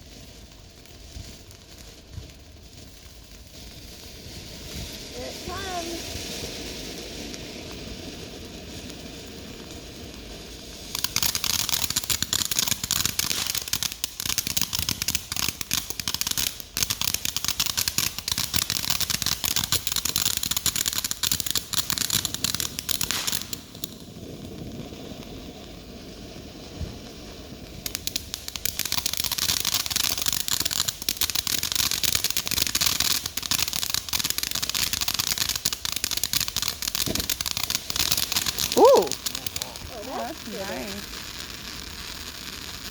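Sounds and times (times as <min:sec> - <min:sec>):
fireworks crackling: 0:00.0 - 0:42.9.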